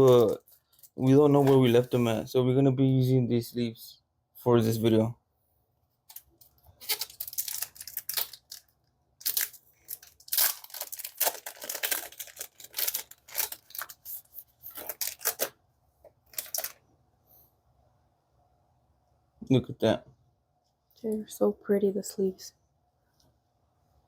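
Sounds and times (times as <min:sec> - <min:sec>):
packaging tearing and rustling: 0:06.1 - 0:15.6, 0:16.2 - 0:16.8.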